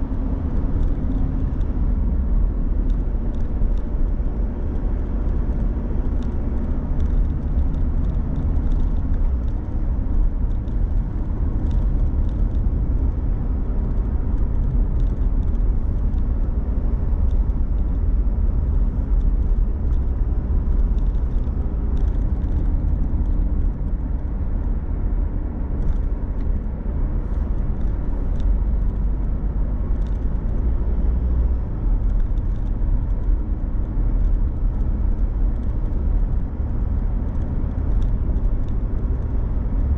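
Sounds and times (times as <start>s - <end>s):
car engine and tyres rumbling: 0.0s - 39.9s
faint light ticks: 2.8s - 13.2s, 13.8s - 24.8s, 27.2s - 39.9s.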